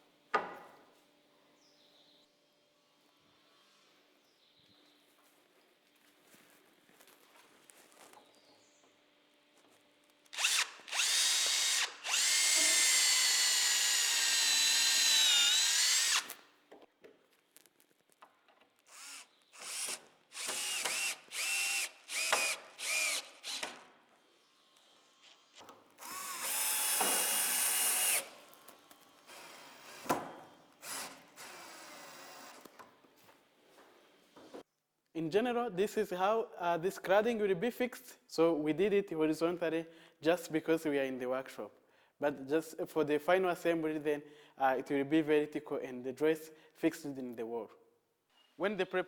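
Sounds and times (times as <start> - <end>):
power drill driving screws into wood: 10.3 - 16.4, 18.8 - 23.9, 25.2 - 32.9.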